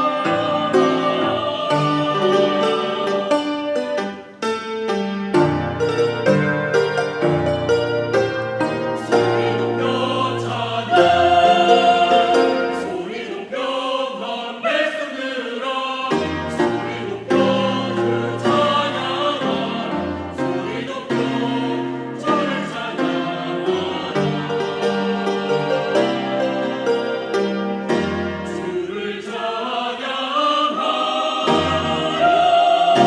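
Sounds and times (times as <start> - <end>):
choir singing a hymn: 0.0 - 4.3, 5.6 - 33.0
piano accompaniment: 0.0 - 13.4, 16.1 - 29.1, 30.7 - 33.0.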